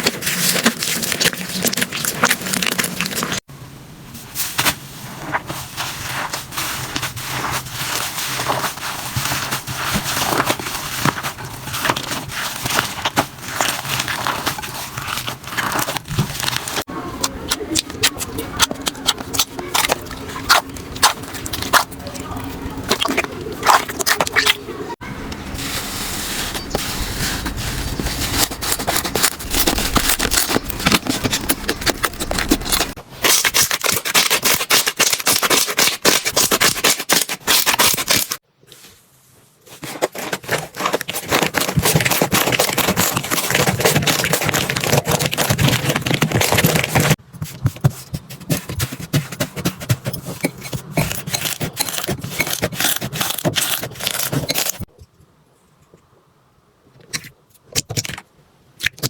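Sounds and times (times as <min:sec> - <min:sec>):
slime crackling and popping: 0:00.0 - 0:03.4.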